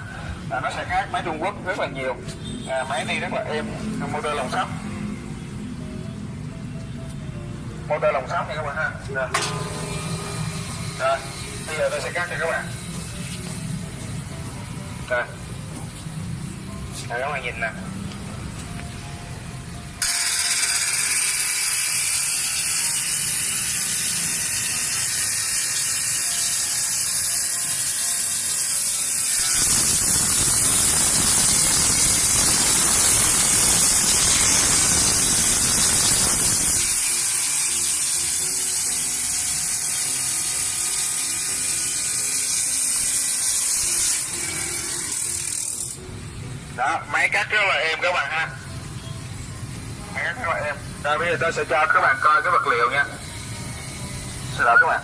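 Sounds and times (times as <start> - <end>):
saw blade grinding through workpiece: 9.3 - 13.9, 20.0 - 46.0
cut-off saw whining: 9.4 - 13.5, 20.0 - 46.0.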